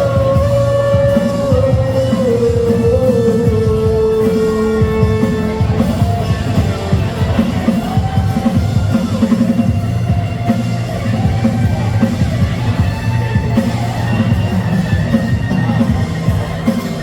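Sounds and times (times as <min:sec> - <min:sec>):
bass guitar: 0:00.0 - 0:17.0
drum kit beat: 0:00.0 - 0:17.0
sustained electric guitar: 0:00.0 - 0:17.0.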